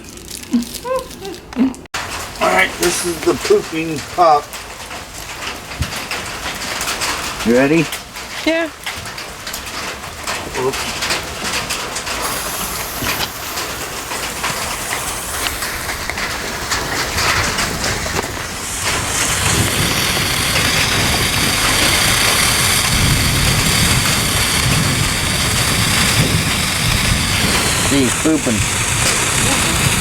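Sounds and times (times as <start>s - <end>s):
steady rain falling: 2.0s - 30.0s
firework hissing with high tone: 2.7s - 3.6s, 12.1s - 30.0s.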